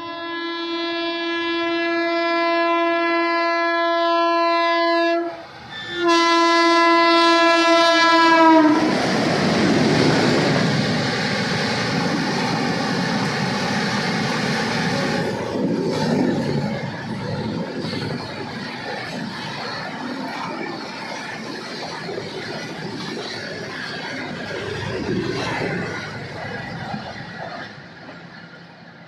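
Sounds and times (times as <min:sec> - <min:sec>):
locomotive horn blasts: 0:00.0 - 0:09.0
train rushing past: 0:05.2 - 0:29.0.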